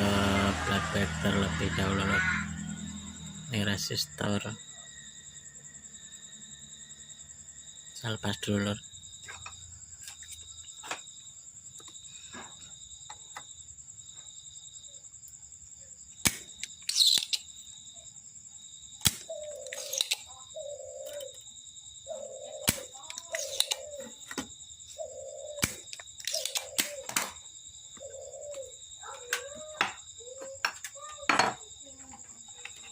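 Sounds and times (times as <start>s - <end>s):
high-pitched insect trill: 0.0s - 32.9s
sharp clicks of tools: 16.2s - 17.5s, 19.0s - 20.3s, 22.7s - 23.8s, 25.6s - 27.3s
bird chirps: 16.6s - 17.8s, 19.2s - 21.4s, 22.0s - 27.2s, 27.8s - 31.2s
dove cooing: 19.3s - 21.4s, 22.0s - 24.2s, 25.0s - 27.2s, 28.0s - 31.2s.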